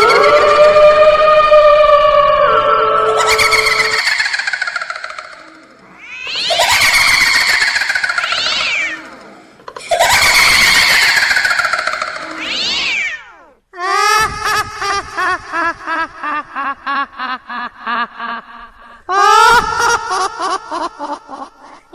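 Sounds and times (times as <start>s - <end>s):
cat-like screeching wail: 0.0s - 9.4s, 10.0s - 13.6s.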